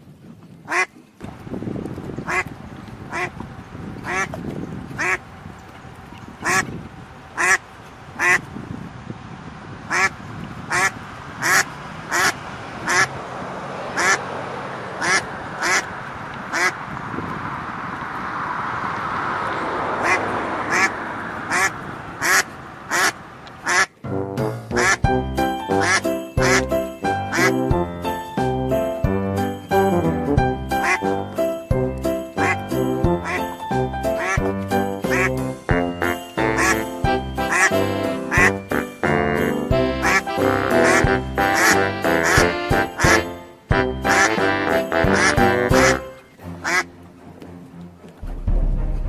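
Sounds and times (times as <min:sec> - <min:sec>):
duck quacking: 0:00.7 - 0:00.9, 0:02.2 - 0:02.5, 0:03.1 - 0:03.3, 0:04.0 - 0:04.3, 0:05.0 - 0:05.2, 0:06.4 - 0:06.7, 0:07.4 - 0:07.6, 0:08.2 - 0:08.4, 0:09.9 - 0:13.1, 0:14.0 - 0:14.2, 0:15.0 - 0:15.9, 0:16.5 - 0:16.8, 0:20.0 - 0:20.9, 0:21.5 - 0:24.0, 0:24.6 - 0:25.1, 0:25.8 - 0:26.7, 0:27.3 - 0:27.6, 0:30.8 - 0:31.2, 0:33.2 - 0:33.5, 0:34.2 - 0:34.5, 0:35.1 - 0:46.9
steady background noise: 0:00.8 - 0:24.1.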